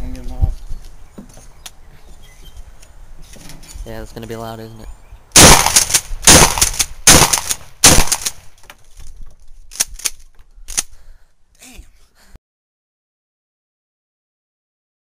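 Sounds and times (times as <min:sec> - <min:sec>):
shotgun blasts: 0:05.4 - 0:08.4.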